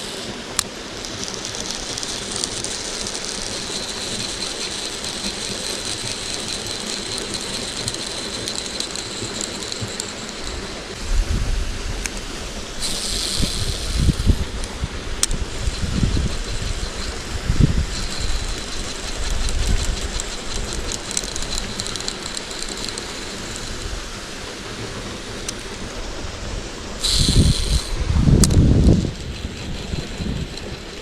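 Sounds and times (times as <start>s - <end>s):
wind and handling thumps on microphone: 25.5s - 30.9s.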